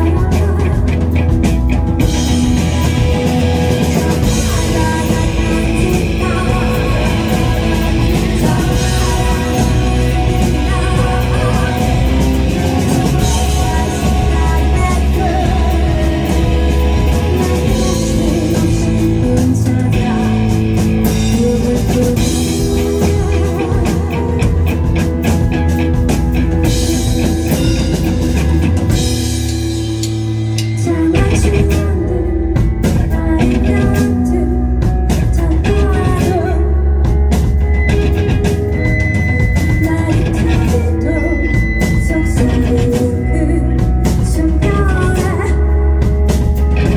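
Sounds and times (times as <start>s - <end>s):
bass guitar: 0.0s - 46.9s
drum kit: 0.0s - 46.9s
electric guitar: 0.0s - 46.9s.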